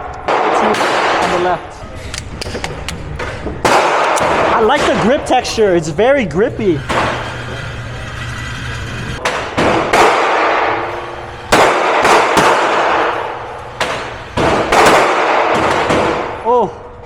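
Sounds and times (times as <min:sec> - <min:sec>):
gunshots with ringing echo: 0:13.9 - 0:16.4.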